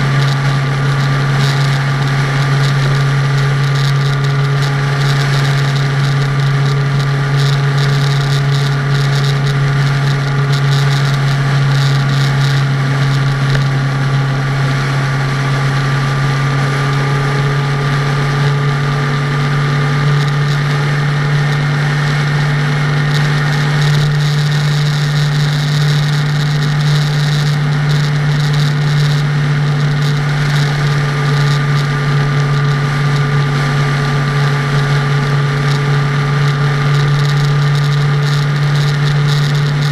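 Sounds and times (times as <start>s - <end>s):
constant low hum: 0.0s - 39.9s
road and wind noise: 0.0s - 39.9s.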